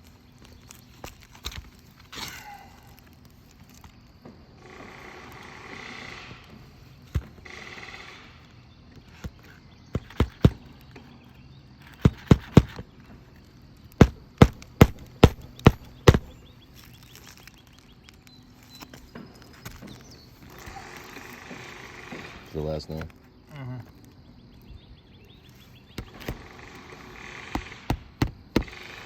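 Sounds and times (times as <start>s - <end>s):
hammer driving nails into shingles: 9.3s - 10.7s, 11.9s - 12.8s, 14.0s - 16.4s, 26.0s - 29.0s.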